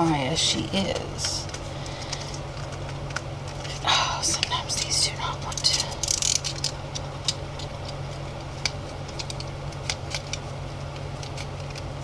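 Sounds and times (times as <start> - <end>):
steady low hum: 0.0 - 12.0
plastic capsule clicking and creaking: 0.9 - 10.4.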